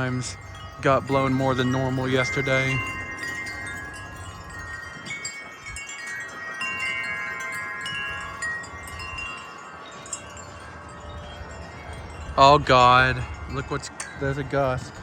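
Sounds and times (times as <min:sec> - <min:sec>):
wind chimes ringing: 0:00.0 - 0:15.0.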